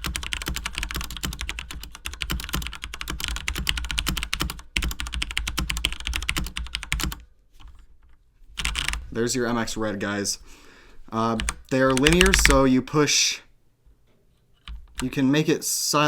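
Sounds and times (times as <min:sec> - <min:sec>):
mechanical keyboard typing: 0:00.0 - 0:09.0, 0:11.4 - 0:12.7, 0:14.6 - 0:15.1.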